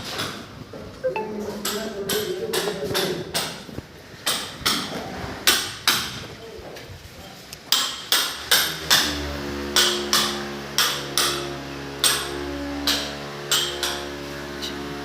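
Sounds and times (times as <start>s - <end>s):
held background music notes: 1.0s - 2.1s.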